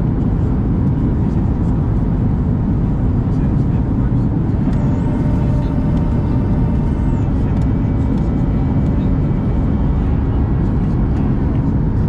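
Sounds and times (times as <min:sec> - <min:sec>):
aircraft cabin engine rumble: 0:00.0 - 0:12.0
faint steady tones: 0:03.1 - 0:12.0.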